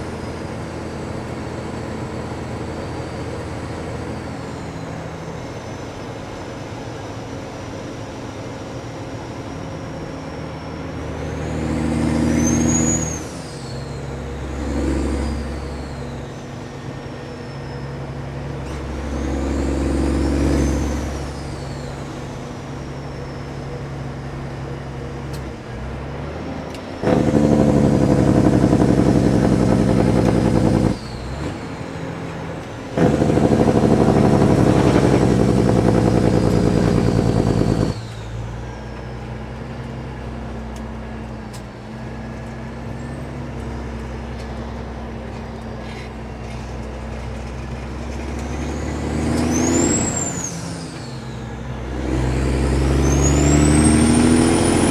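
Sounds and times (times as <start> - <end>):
diesel truck engine droning: 0.0 - 54.9
high whistle: 12.2 - 23.7.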